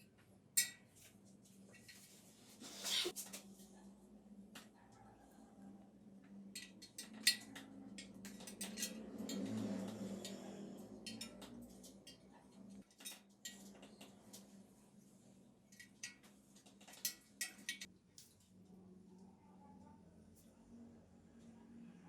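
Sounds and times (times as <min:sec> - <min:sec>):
small metal parts clinking: 0:06.6 - 0:09.8.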